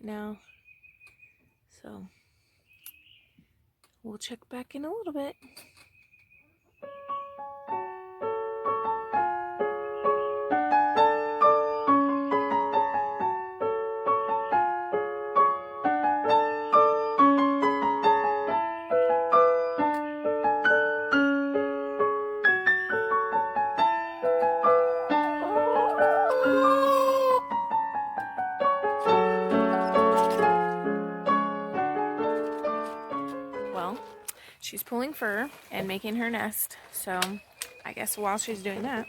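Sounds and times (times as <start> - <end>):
piano music: 6.8 - 34.3.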